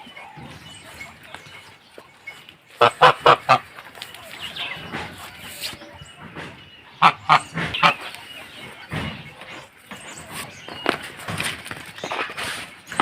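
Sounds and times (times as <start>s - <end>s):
poultry honking calls: 0.0s - 9.7s.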